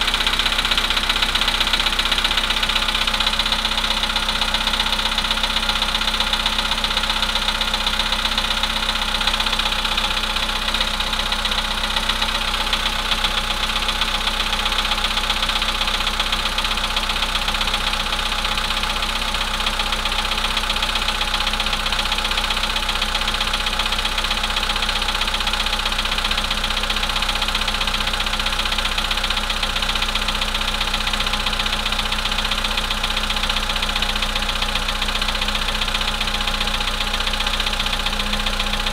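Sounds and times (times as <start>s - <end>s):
car engine idling with knocking: 0.0s - 38.9s.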